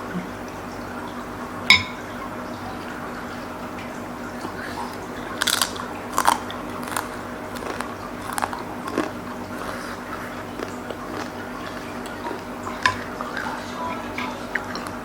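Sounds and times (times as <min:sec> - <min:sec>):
person chewing crunchy food: 0:04.7 - 0:13.4.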